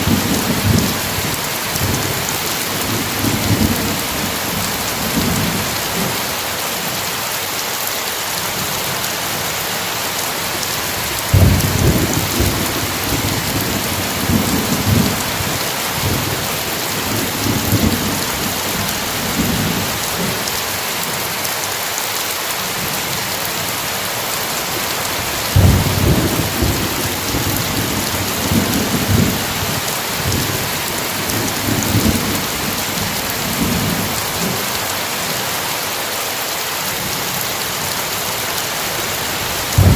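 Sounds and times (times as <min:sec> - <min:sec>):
heavy rain: 0:00.0 - 0:39.9
thunder rumbling: 0:11.0 - 0:20.3, 0:25.2 - 0:34.6, 0:39.5 - 0:39.9.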